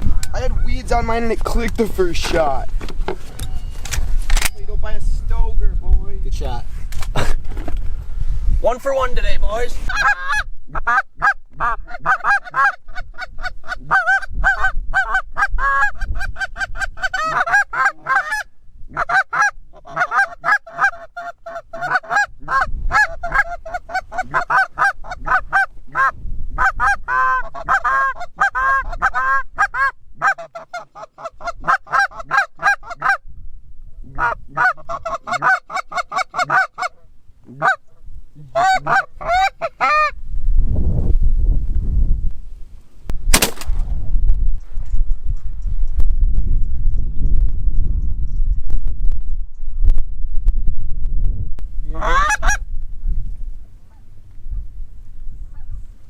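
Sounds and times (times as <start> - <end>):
geese honking: 9.9 - 33.2, 34.2 - 40.2, 51.9 - 52.6.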